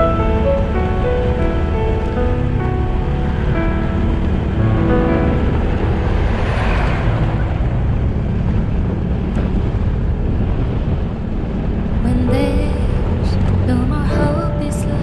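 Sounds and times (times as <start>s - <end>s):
wind rushing over microphone: 0.0s - 15.0s.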